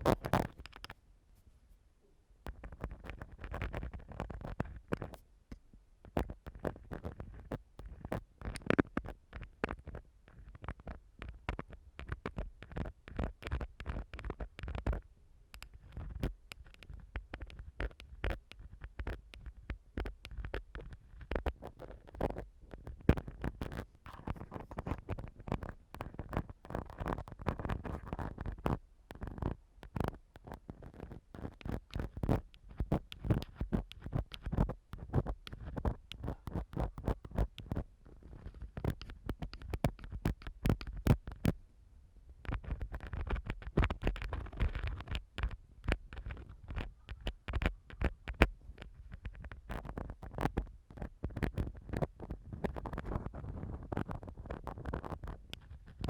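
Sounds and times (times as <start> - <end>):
ear cleaning tool scraping microphone: 15.6 - 41.6.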